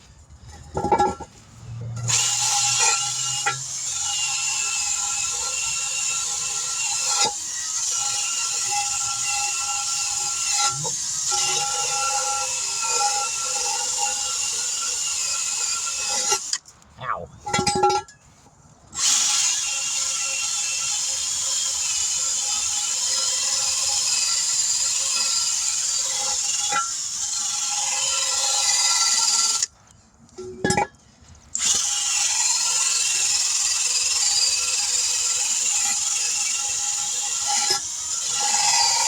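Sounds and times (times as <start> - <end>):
power tool running: 2.0 - 16.6.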